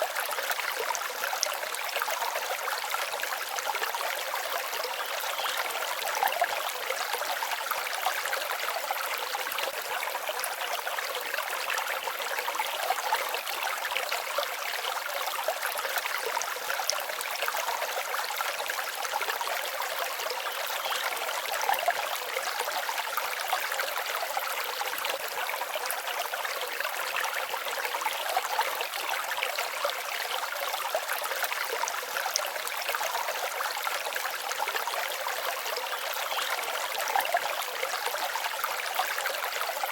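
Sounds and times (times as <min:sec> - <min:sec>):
stream babbling: 0:00.0 - 0:39.9.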